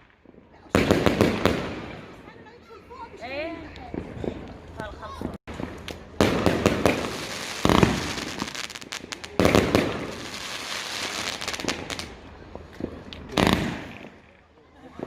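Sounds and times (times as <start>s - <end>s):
loud firework bangs: 0.0s - 2.4s, 3.9s - 14.4s
firework crackling: 0.0s - 15.0s.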